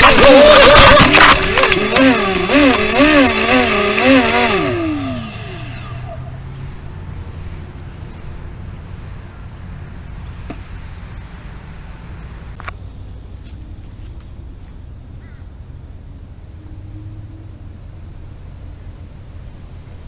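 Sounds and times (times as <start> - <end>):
quadcopter motors whining: 0.0 - 6.5.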